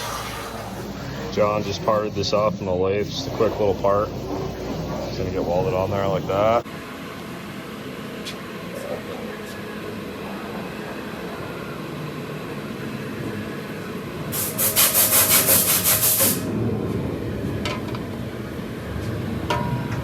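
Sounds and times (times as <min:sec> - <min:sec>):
shop background noise: 0:08.2 - 0:18.2.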